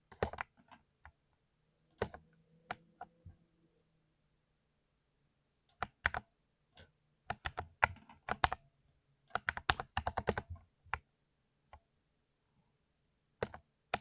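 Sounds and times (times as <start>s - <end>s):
mechanical keyboard typing: 0.1s - 0.8s, 2.0s - 2.8s, 5.8s - 6.2s, 6.8s - 8.6s, 9.3s - 11.0s, 13.4s - 14.0s.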